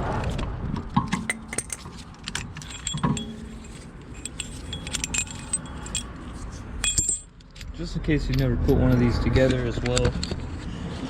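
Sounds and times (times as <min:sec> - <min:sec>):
small metal pieces clinking: 0:01.2 - 0:07.7.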